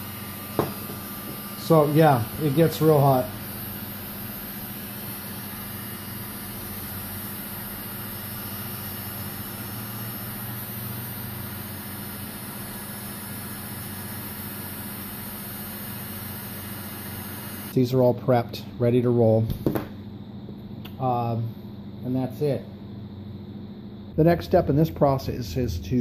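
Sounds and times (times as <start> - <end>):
heat gun motor hum: 0.0 - 17.8.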